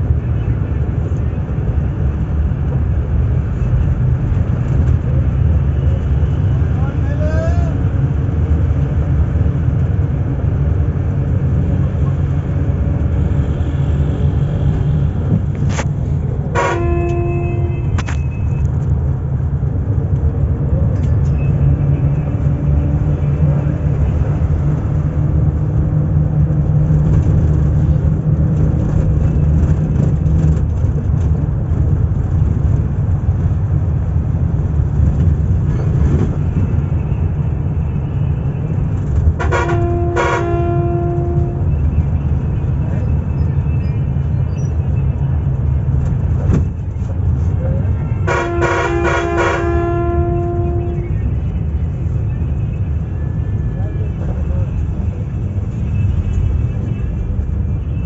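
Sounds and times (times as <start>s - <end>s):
bus engine and road rumble: 0.0s - 58.0s
vehicle horn toot: 16.5s - 18.6s, 39.4s - 42.2s, 48.0s - 51.3s.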